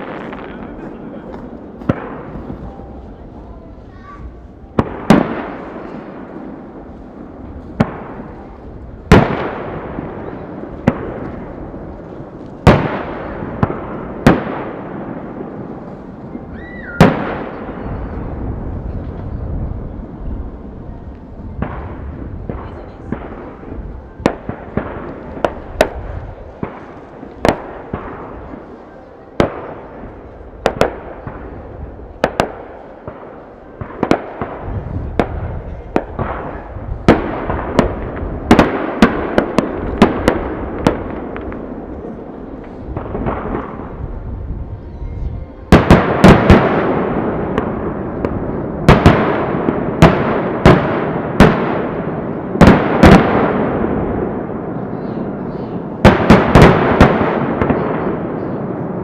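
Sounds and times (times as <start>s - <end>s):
fireworks bursting: 0.0s - 59.0s.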